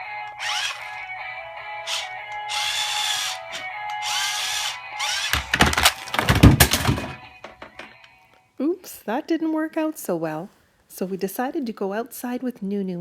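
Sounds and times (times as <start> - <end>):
toy electronic tune: 0.3 - 5.4
small motor whirring: 0.4 - 1.0, 1.8 - 5.4
clatter of knocks and thumps: 5.3 - 7.9.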